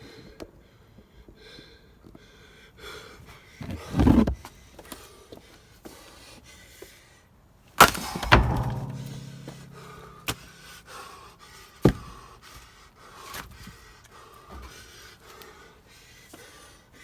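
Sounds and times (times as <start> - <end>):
firewood clatter: 7.8 - 10.6
wooden knocks: 8.1 - 10.5.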